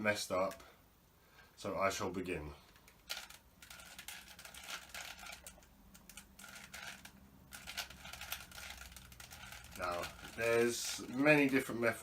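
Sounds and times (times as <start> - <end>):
puzzle cube plastic clicks: 2.7 - 11.7.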